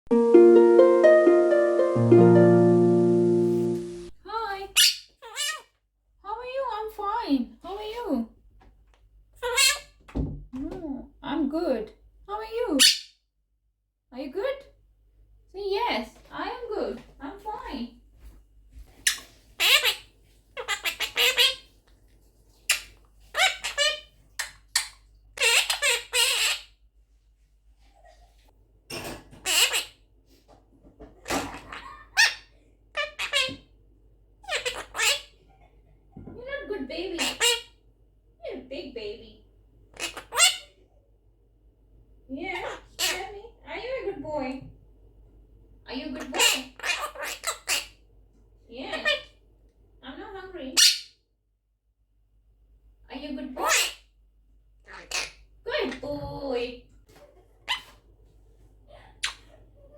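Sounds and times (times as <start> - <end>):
harp-like intro jingle: 0.1 - 4.2
parrot calls and screech: 19.0 - 21.7, 22.7 - 26.8, 29.4 - 30.0, 40.0 - 40.8, 46.3 - 48.0, 53.6 - 54.1, 54.9 - 55.4.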